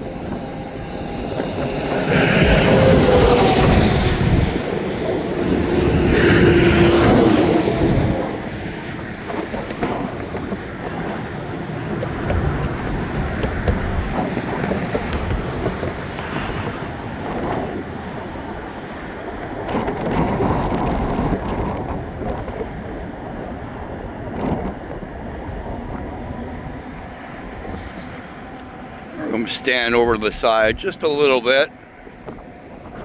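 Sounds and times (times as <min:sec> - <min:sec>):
trucks passing closely: 0:00.0 - 0:19.1, 0:27.1 - 0:32.6
wind buffeting microphone: 0:00.0 - 0:33.0.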